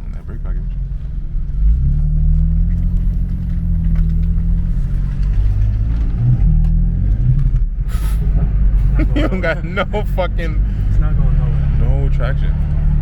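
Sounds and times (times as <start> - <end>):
car engine droning: 0.0 - 13.0.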